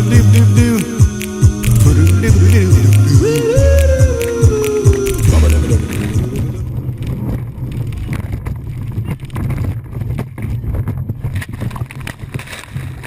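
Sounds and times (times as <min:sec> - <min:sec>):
sharp clicks: 0:00.3 - 0:06.5
wind buffeting microphone: 0:03.2 - 0:13.0.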